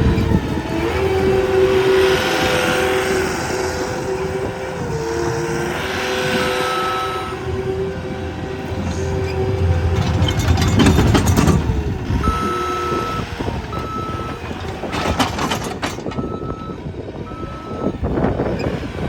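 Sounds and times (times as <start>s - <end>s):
diesel engine running: 0.0s - 19.0s
machine clanks: 8.6s - 13.1s, 13.7s - 16.4s.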